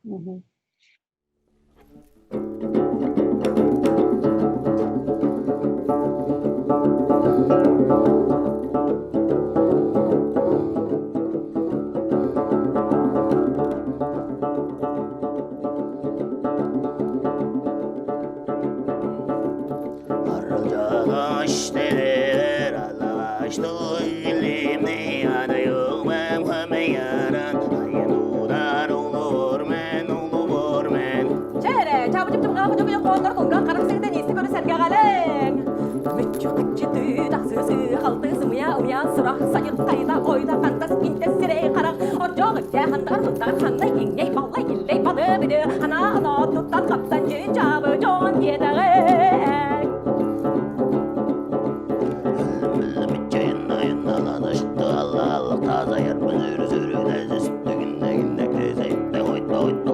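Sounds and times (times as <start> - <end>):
plucked string instrument: 1.6 - 59.9
woman singing folk song: 3.2 - 15.2, 18.4 - 59.9
wavering melodic vocal lines: 6.4 - 8.5, 18.9 - 50.0, 51.6 - 59.9.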